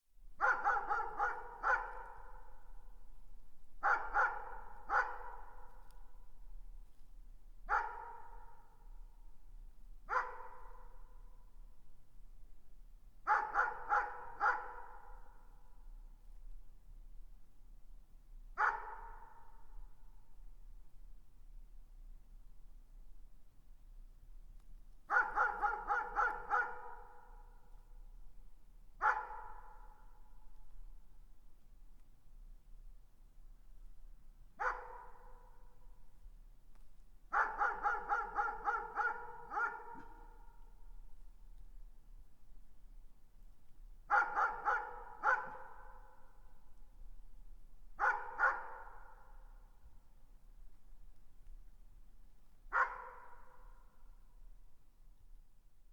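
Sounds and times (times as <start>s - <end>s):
distant dog barking: 0.4s - 2.4s, 3.8s - 5.6s, 7.7s - 8.6s, 10.1s - 11.0s, 13.3s - 15.2s, 18.6s - 19.6s, 25.1s - 27.2s, 29.0s - 30.0s, 34.6s - 35.6s, 37.3s - 40.6s, 44.1s - 46.1s, 48.0s - 49.3s, 52.7s - 53.7s.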